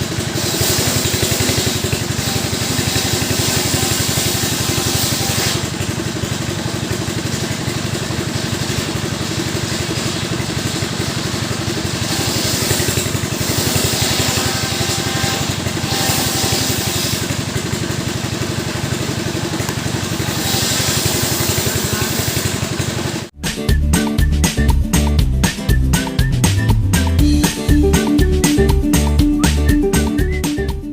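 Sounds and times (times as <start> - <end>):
chainsaw engines revving: 0.0 - 23.3.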